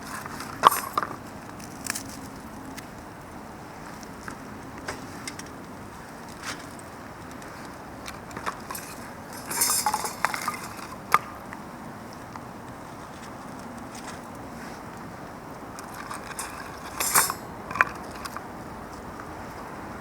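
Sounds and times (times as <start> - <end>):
cookware and utensils clinking: 8.7 - 11.0, 16.3 - 17.5.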